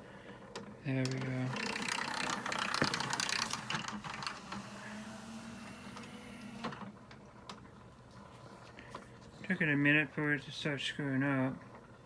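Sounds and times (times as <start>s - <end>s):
cd changer mechanism whirring: 0.4s - 7.9s.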